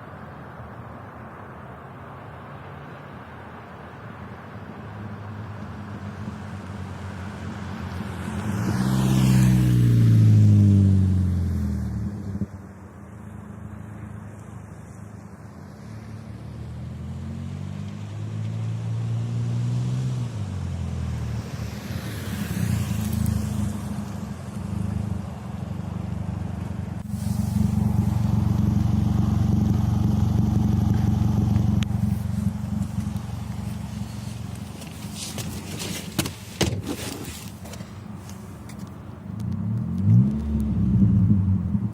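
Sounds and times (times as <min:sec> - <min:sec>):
loud car exhaust accelerating: 0:22.8 - 0:35.4, 0:39.4 - 0:41.9.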